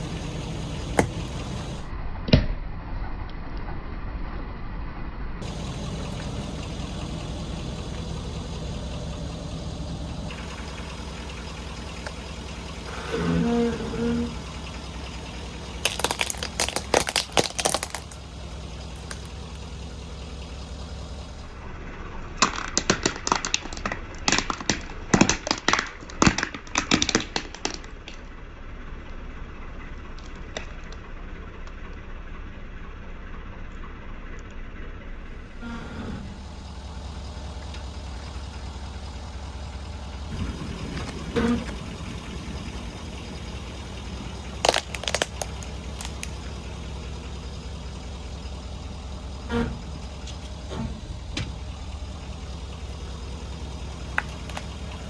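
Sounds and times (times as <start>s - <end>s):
dull thuds: 0.0s - 1.9s, 39.5s - 55.0s
objects cracking under tyre: 0.0s - 1.9s, 10.2s - 21.5s, 22.4s - 29.1s, 29.8s - 32.0s, 37.4s - 55.0s
truck engine running: 0.0s - 2.2s, 3.0s - 55.0s.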